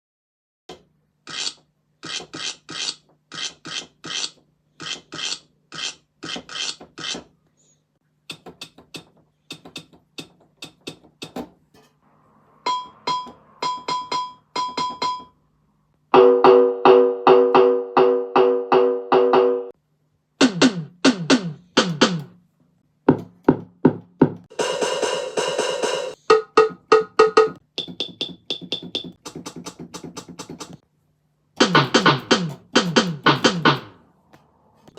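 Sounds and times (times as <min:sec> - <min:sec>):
high beeps: 0:12.6 - 0:15.3.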